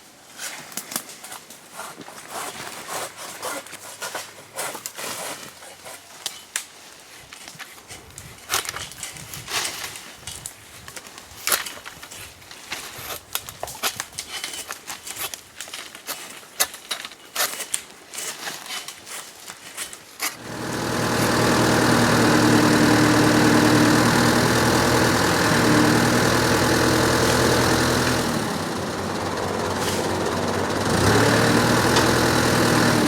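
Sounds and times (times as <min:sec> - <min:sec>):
engine running: 0:20.4 - 0:33.0.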